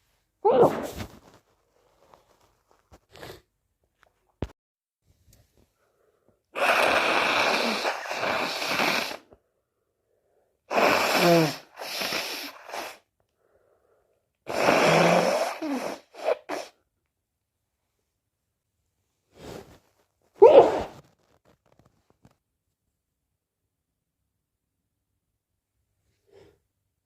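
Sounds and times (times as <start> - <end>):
person sneezing: 0.4 - 1.1, 6.6 - 9.3, 10.7 - 13.0, 14.5 - 16.8, 20.4 - 21.0
person sniffing: 6.6 - 9.3, 10.7 - 13.1, 14.5 - 16.8, 19.3 - 21.0.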